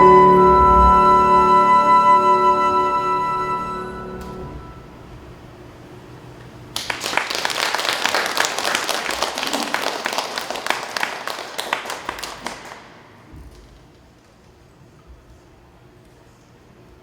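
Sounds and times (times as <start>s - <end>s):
audience applause: 6.8s - 13.2s.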